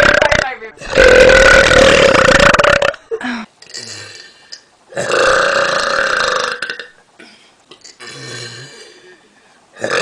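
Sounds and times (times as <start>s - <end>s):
woman burping: 0.0s - 4.3s.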